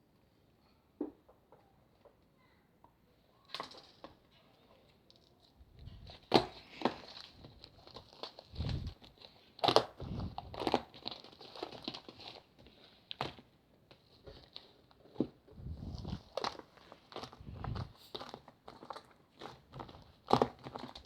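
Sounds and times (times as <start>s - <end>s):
slime squelches: 17.2s - 20.0s.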